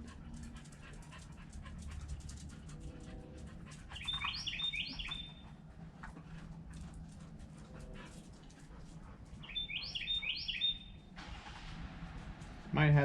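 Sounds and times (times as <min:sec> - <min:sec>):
bird chirping high notes: 0:04.0 - 0:05.4, 0:09.4 - 0:10.9.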